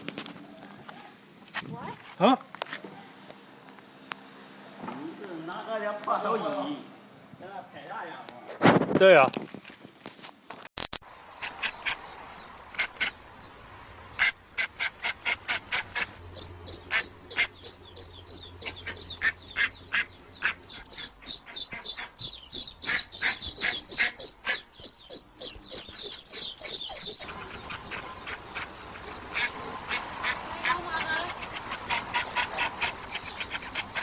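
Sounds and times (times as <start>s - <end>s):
birds calling: 0.0s - 34.0s
fast high chirps: 16.0s - 27.3s.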